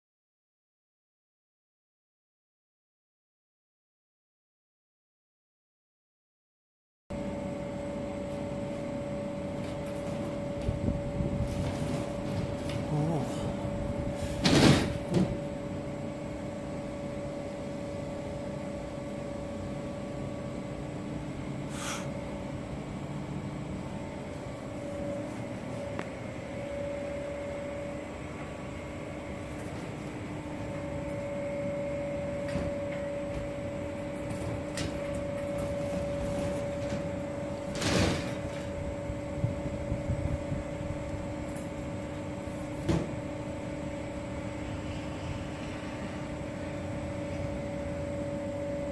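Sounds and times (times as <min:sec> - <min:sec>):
steady machine hum: 0:07.1 - 0:48.9.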